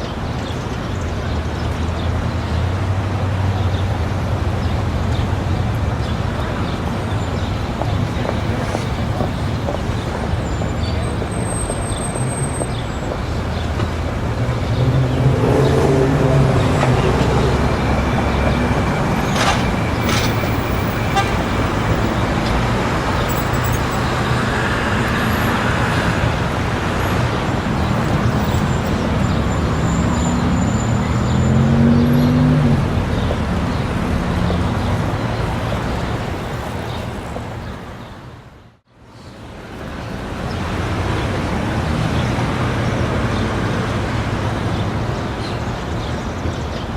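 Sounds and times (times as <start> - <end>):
crowd of people talking: 0.0 - 24.3
traffic noise: 0.0 - 46.9.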